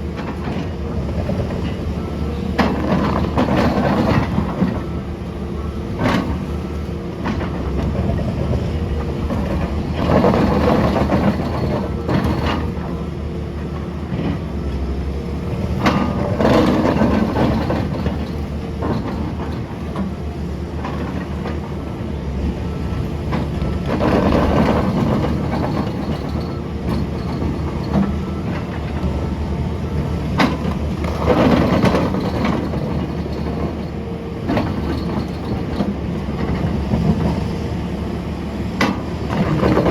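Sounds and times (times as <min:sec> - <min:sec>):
excavator diesel engine: 0:00.0 - 0:39.9.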